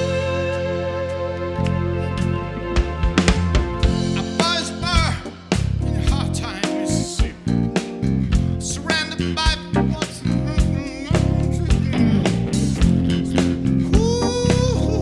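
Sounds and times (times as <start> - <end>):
live funk band playing: 0.0 - 15.0
person singing: 4.0 - 5.4, 8.8 - 15.0.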